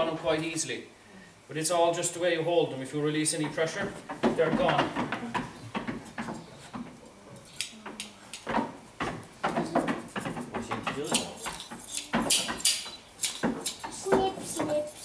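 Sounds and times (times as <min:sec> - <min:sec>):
sheep shears clicking: 0:03.2 - 0:15.0.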